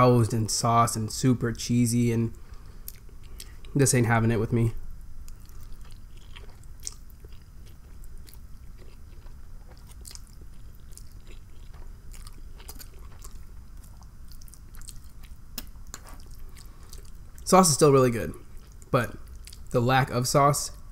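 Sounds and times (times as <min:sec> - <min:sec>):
chewing with mouth clicks: 0:02.8 - 0:03.8, 0:05.2 - 0:17.5, 0:18.4 - 0:19.7.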